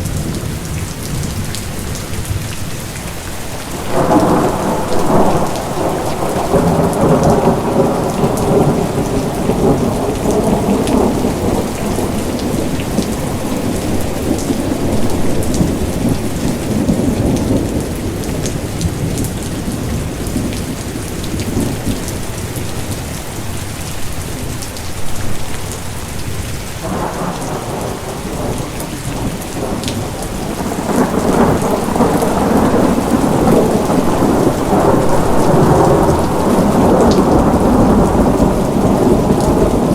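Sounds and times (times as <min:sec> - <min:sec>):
steady rain falling: 0:00.0 - 0:39.9
rolling thunder: 0:03.6 - 0:22.2, 0:26.8 - 0:39.9.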